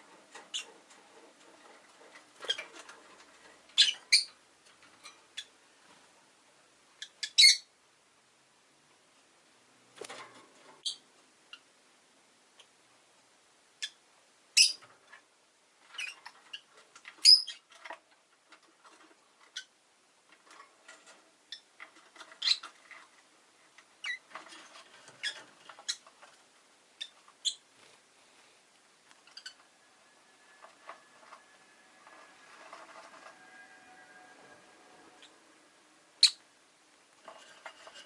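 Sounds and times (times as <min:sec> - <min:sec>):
bird chirping and squeaking: 0:00.3 - 0:04.4, 0:05.3 - 0:05.6, 0:07.0 - 0:07.7, 0:10.8 - 0:11.6, 0:14.6 - 0:14.9, 0:15.9 - 0:18.0, 0:19.4 - 0:19.8, 0:21.4 - 0:23.0, 0:24.0 - 0:26.2, 0:27.0 - 0:27.7, 0:29.2 - 0:29.7, 0:36.2 - 0:36.5.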